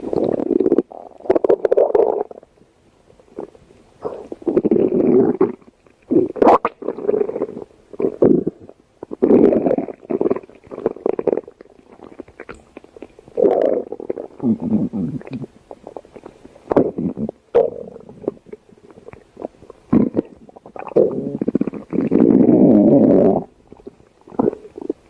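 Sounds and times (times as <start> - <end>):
stomach growling: 0.0 - 2.5, 3.4 - 25.0.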